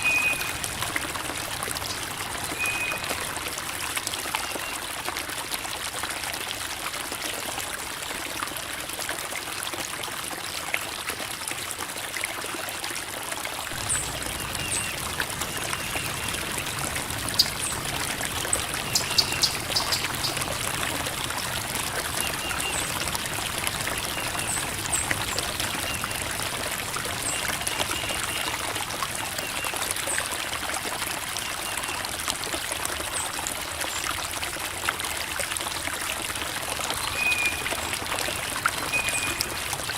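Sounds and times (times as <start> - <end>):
creek water babbling over rocks: 0.0 - 39.9.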